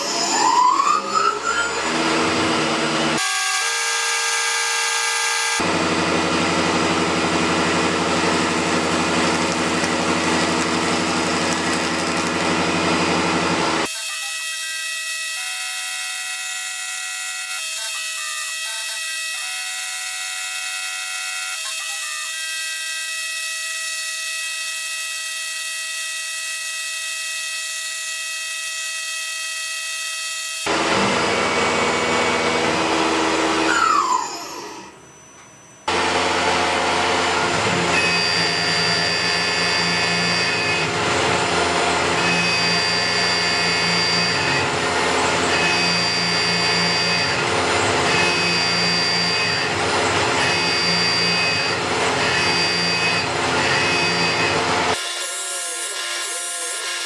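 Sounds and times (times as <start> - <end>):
cnc milling machines cutting metal: 30.6 - 57.0
high spindle whine: 30.7 - 55.0.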